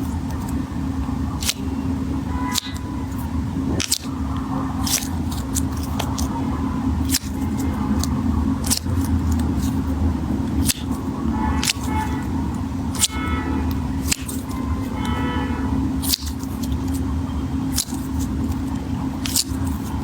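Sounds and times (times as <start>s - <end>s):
steady low hum: 0.0s - 20.0s
crunchy clicks of squeezed stress ball: 3.8s - 4.1s.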